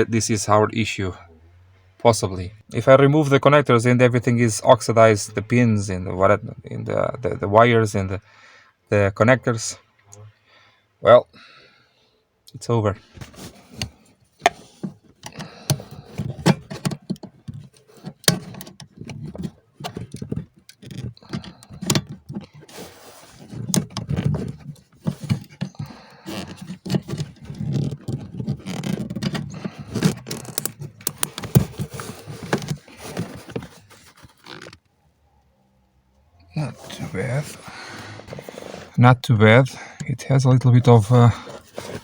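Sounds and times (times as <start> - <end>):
knocks and scraping: 13.0 - 34.8, 36.6 - 39.0, 39.7 - 42.0
rustling handling: 13.0 - 34.9, 36.6 - 39.0, 40.8 - 42.0.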